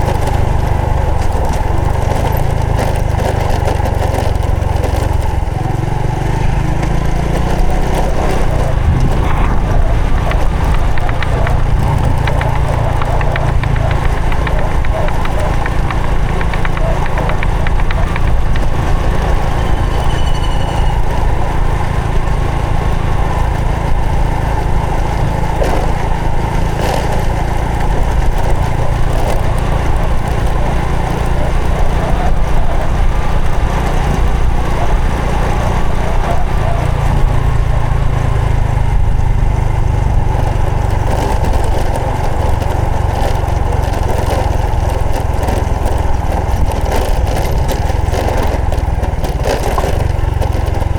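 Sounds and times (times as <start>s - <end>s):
motorcycle engine running: 0.0s - 50.9s.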